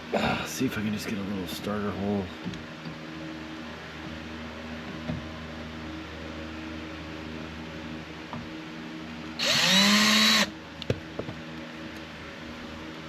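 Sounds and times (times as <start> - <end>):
power drill boring: 9.4 - 10.5.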